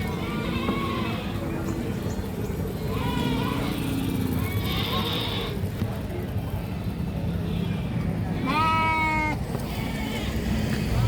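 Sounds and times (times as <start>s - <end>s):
goat bleating: 0.0s - 1.5s, 2.8s - 5.6s, 7.5s - 10.4s.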